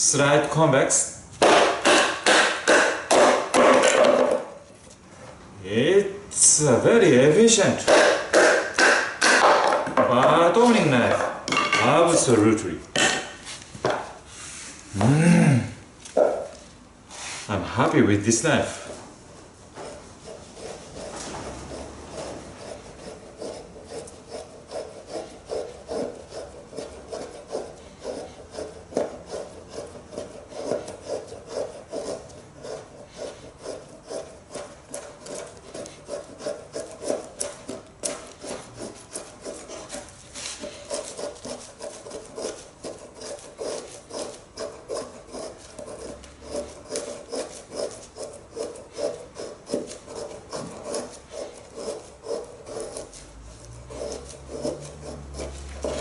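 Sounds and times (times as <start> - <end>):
knife blade carving wood: 7.9 - 9.8, 19.8 - 56.0.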